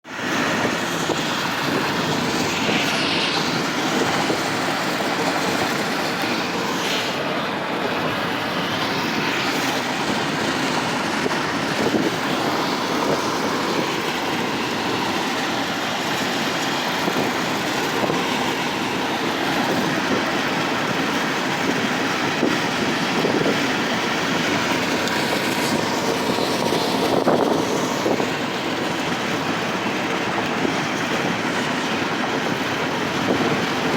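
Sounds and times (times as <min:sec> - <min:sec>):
road and tyre noise: 0:00.0 - 0:33.9.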